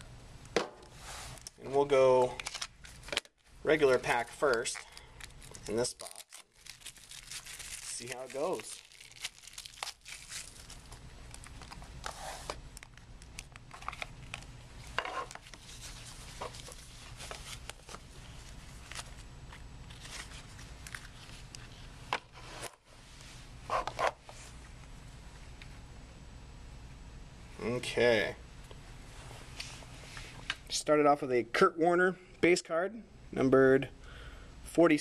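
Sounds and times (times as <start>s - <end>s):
wrapper crinkling and tearing: 2.2s - 3.3s, 4.0s - 14.5s, 19.9s - 21.5s.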